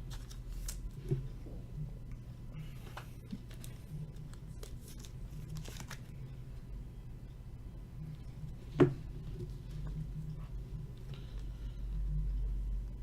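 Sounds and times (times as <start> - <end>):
trading cards rustling and clicking: 0.0 - 1.2, 2.8 - 6.2
steady low hum: 0.0 - 13.0.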